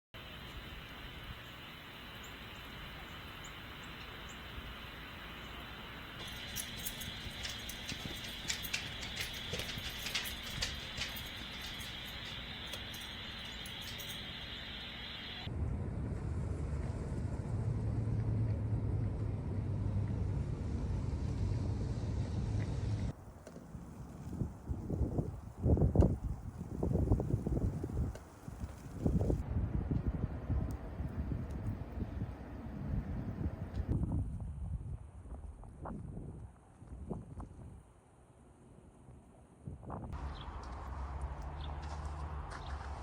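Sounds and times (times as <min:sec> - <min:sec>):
faint high chirps: 0:00.2 - 0:15.5
low hum: 0:00.2 - 0:23.1
vehicle engine rumble: 0:00.2 - 0:34.0, 0:40.2 - 0:43.0
outdoor background noise: 0:00.2 - 0:43.0
road or wind noise: 0:00.2 - 0:43.0.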